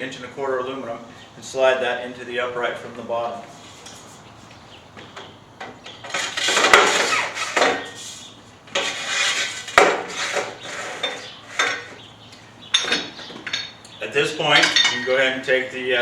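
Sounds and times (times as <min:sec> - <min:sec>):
metal tube scraping: 0:06.1 - 0:12.0.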